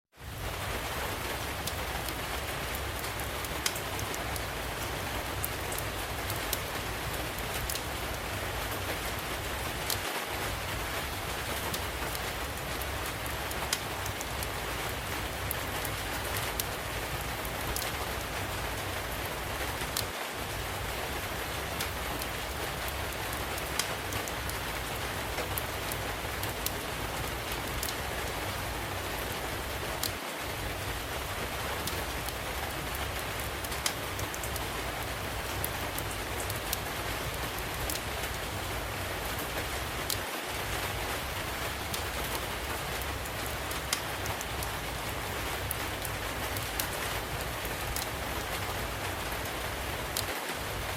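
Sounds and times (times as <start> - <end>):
steady rain falling: 0.1 - 50.9
wood fire crackling and popping: 3.0 - 4.2, 7.4 - 7.8, 23.6 - 24.6, 27.8 - 28.0, 33.6 - 35.1, 37.6 - 38.4.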